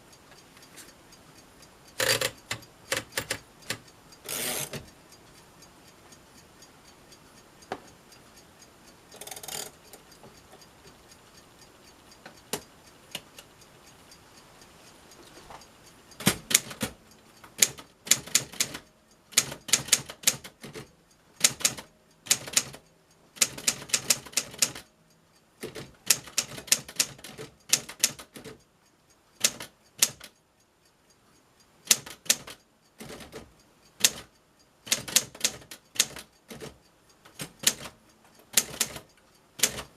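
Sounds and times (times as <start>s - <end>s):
manual typewriter typing: 2.0s - 4.8s, 16.2s - 17.0s, 17.6s - 22.8s, 23.4s - 24.9s, 25.6s - 28.6s, 29.4s - 30.3s, 31.9s - 36.8s, 37.4s - 39.9s.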